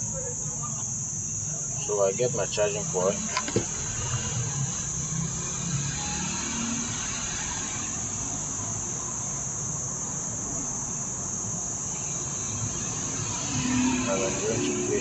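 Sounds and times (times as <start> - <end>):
high-pitched hiss: 0.0 - 15.0.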